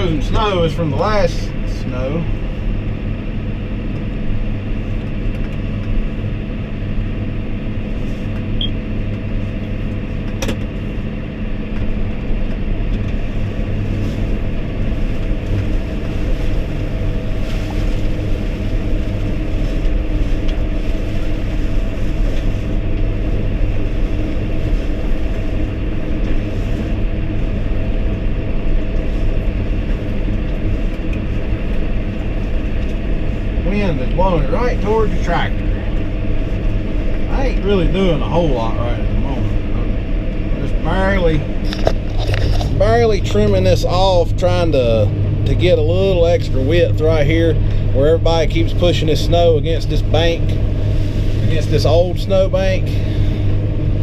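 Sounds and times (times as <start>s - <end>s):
tractor diesel engine running: 0.0s - 54.0s.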